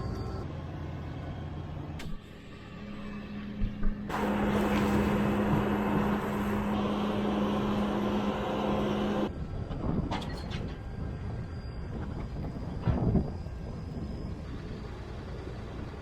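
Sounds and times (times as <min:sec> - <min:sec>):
constant drone: 0:00.0 - 0:16.0
vehicle engine running: 0:04.1 - 0:09.3.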